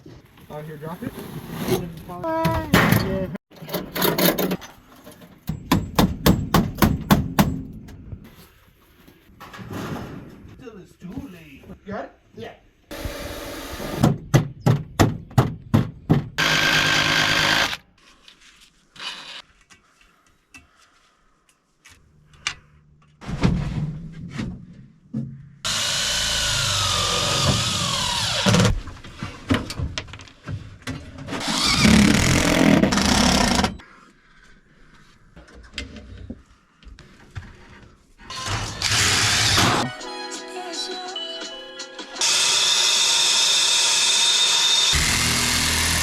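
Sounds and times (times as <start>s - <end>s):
power tool whining: 12.9s - 14.0s, 16.4s - 17.8s, 25.7s - 28.7s, 31.4s - 33.8s, 38.3s - 39.9s, 42.2s - 46.0s.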